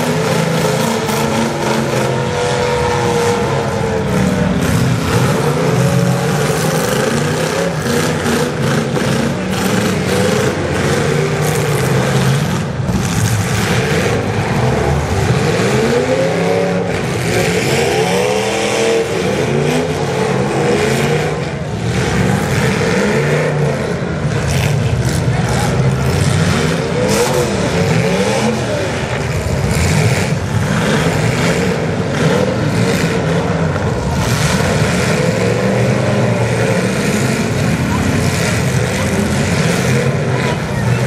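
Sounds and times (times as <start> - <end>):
car engines revving: 0.0 - 41.0.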